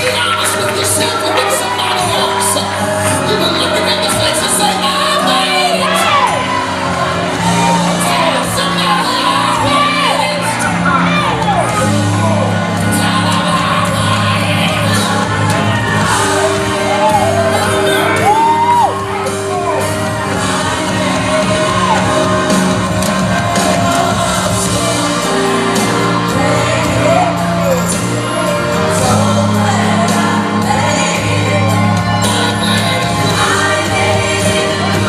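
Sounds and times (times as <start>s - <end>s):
band playing held chords: 0.0s - 35.0s
congregation shouting and whooping: 0.0s - 35.0s.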